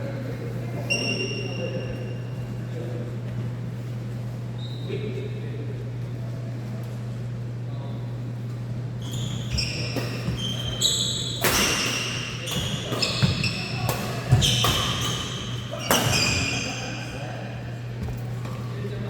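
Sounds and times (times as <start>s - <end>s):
low hum in large hall: 0.0s - 19.0s
shoes squeaking on court floor: 0.8s - 2.3s, 9.0s - 19.0s
rackets hitting shuttlecock: 9.6s - 16.5s.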